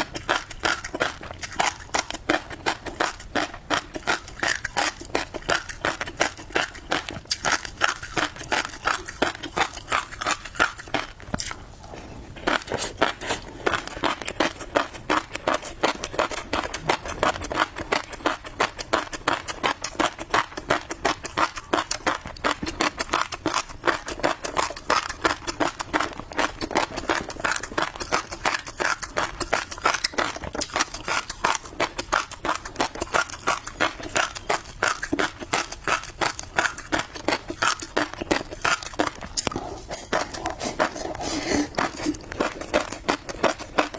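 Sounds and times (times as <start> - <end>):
chewing crunchy fish roe: 0.0 - 43.9.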